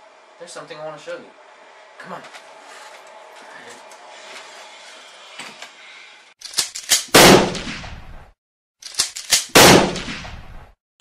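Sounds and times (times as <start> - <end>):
gunshots: 6.9 - 8.2, 9.3 - 10.7
sharp clicks: 8.8 - 10.4.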